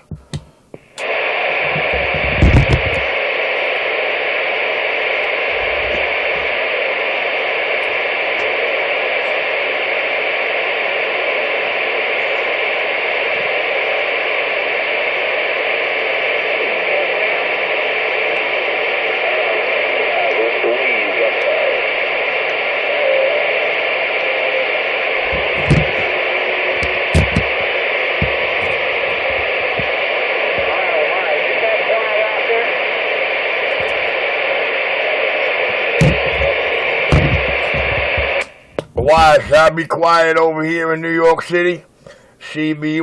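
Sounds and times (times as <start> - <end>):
radio static hiss: 0.0 - 43.0.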